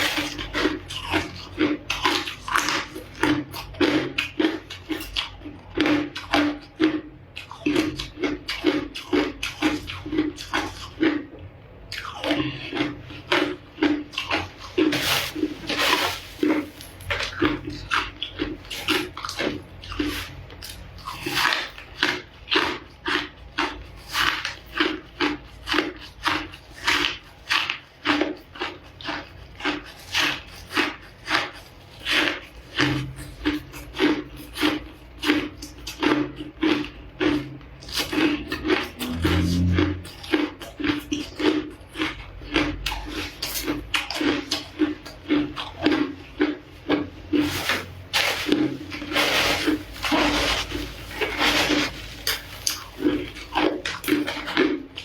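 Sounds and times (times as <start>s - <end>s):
ice being chewed: 0.0s - 55.0s.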